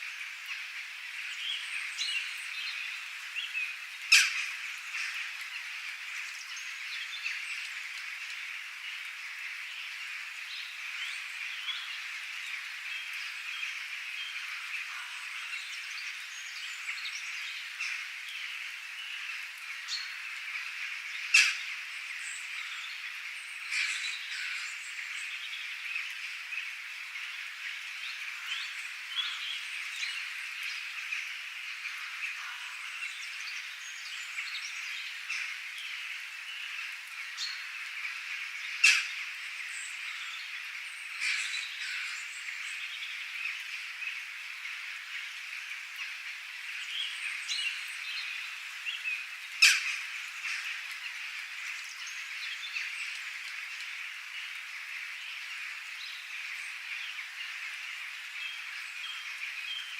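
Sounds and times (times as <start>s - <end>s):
loud sharp bird calls: 36.6s - 43.3s, 47.6s - 52.9s.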